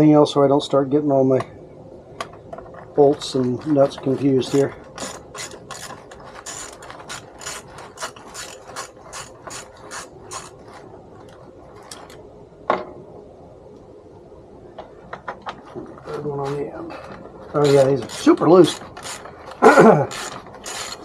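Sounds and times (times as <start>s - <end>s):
ratchet clicking: 4.4s - 10.6s, 17.6s - 21.0s.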